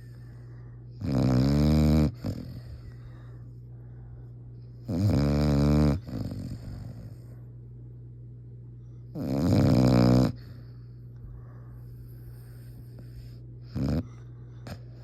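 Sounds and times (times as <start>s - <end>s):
faint breathing: 0.0s - 1.0s, 2.1s - 4.8s, 10.3s - 15.0s
loud snoring: 1.0s - 2.8s, 4.8s - 7.1s, 9.1s - 10.5s, 13.7s - 14.1s.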